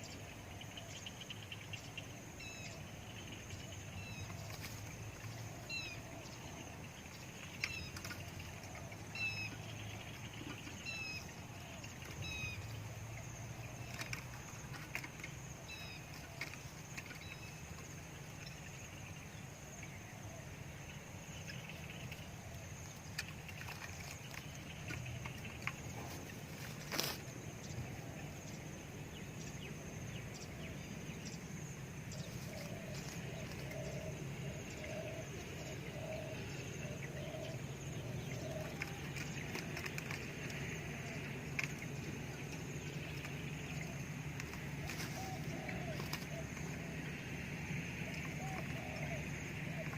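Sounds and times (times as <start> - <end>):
high insect whine: 0.0 - 49.9
small bird chirping: 0.0 - 49.9
dove cooing: 2.4 - 19.1, 32.0 - 49.9.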